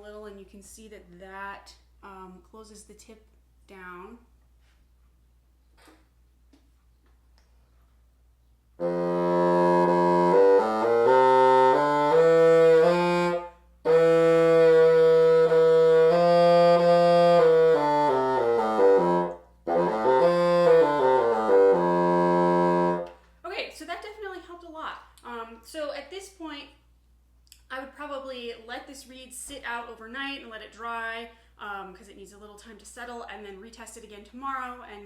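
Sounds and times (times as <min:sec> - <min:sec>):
bassoon playing notes: 0:08.8 - 0:23.1.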